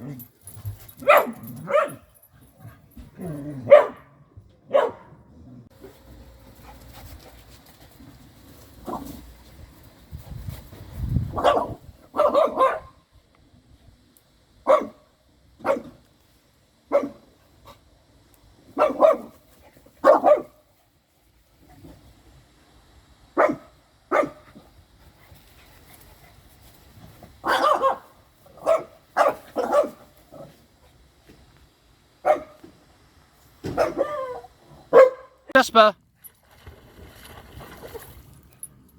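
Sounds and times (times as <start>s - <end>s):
dogs barking: 1.0s - 2.0s, 3.7s - 5.1s, 11.4s - 13.0s, 14.7s - 15.0s, 18.8s - 19.3s, 27.4s - 30.0s, 33.7s - 35.4s.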